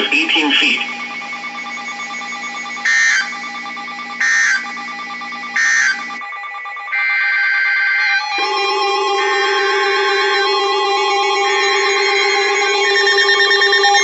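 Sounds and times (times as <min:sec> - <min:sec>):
steady hum: 0:00.0 - 0:07.0
alert data bursts: 0:00.0 - 0:14.0.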